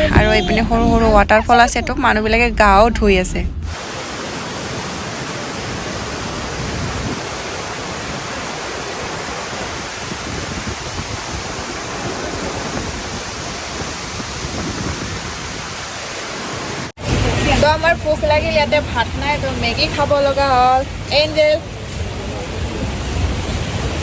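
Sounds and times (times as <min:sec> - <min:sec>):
waterfall rushing: 0:03.6 - 0:24.0.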